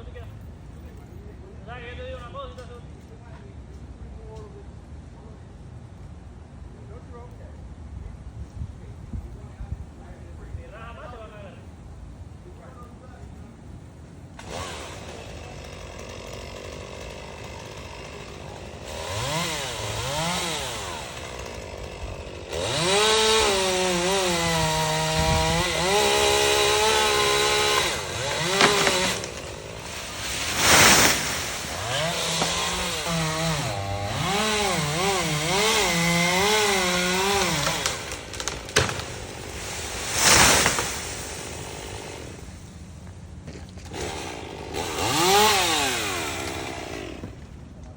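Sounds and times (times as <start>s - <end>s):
chainsaw cutting wood: 14.4s - 42.7s, 43.5s - 47.6s
short loud noise bursts: 28.5s - 33.0s, 38.6s - 42.6s.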